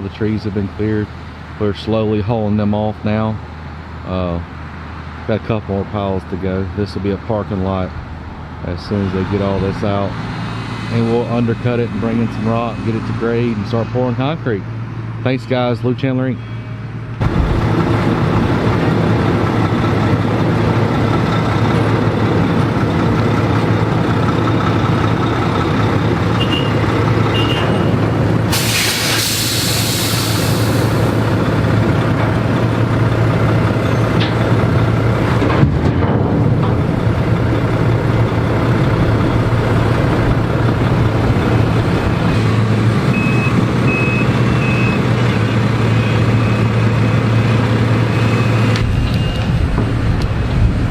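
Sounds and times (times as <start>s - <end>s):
heavy diesel equipment running: 16.4s - 50.9s
air hiss: 28.5s - 31.2s.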